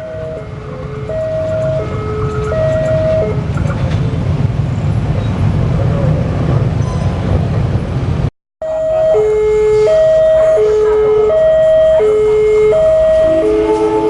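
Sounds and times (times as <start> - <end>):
level crossing warning tones: 0.0 - 3.5, 8.6 - 14.0
passing train rumble: 0.0 - 14.0.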